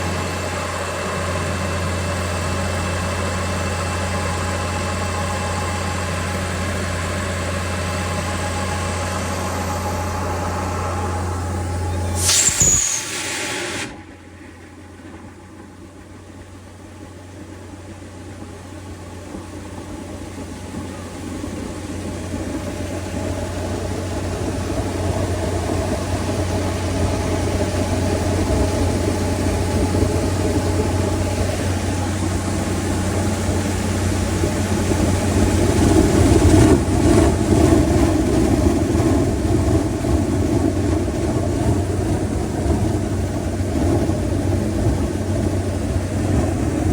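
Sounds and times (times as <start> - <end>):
rushing air noise: 0.0 - 15.4
air compressor engine drone: 0.0 - 46.9.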